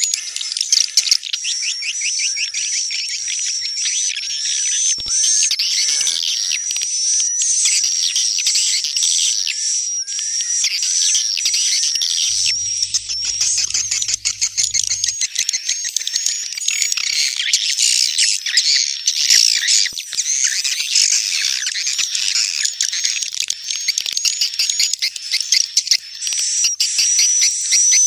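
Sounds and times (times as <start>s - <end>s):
swiftlets twittering and chirping: 10.2s - 28.0s.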